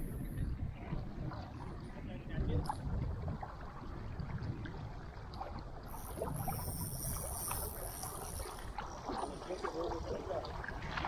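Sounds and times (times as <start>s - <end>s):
water noise: 0.0s - 11.0s
wind rumbling on microphone: 0.0s - 11.0s
high hissing buzz: 5.9s - 8.7s.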